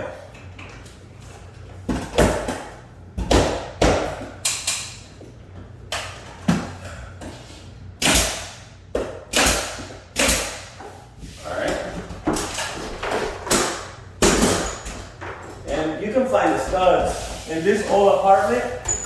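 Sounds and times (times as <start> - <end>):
nail gun firing: 8.0 - 8.6, 9.3 - 10.7.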